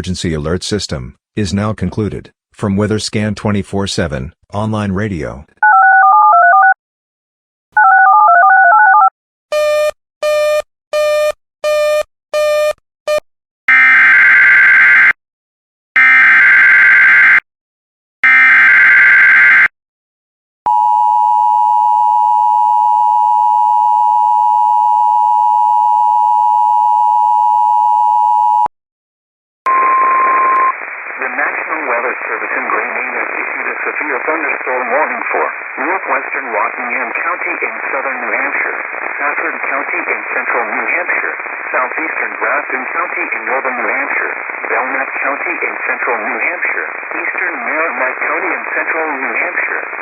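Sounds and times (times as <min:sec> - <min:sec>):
brief tone: 0:20.7 - 0:28.7, 0:29.7 - 0:30.8
two-tone attention signal: 0:29.7 - 0:30.7
radio static: 0:30.2 - 0:50.0.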